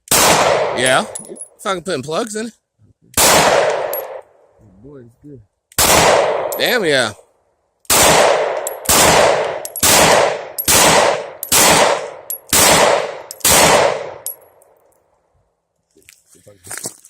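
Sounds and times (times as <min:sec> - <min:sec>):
pistol shots with echo: 0:00.1 - 0:01.2, 0:03.2 - 0:04.2, 0:05.8 - 0:06.9, 0:07.9 - 0:14.4.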